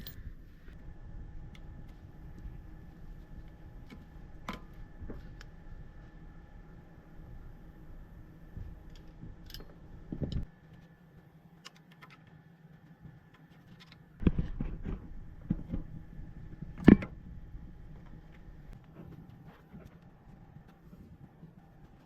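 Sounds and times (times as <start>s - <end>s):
tools and metal parts clinking: 0.0s - 0.6s, 8.8s - 10.5s.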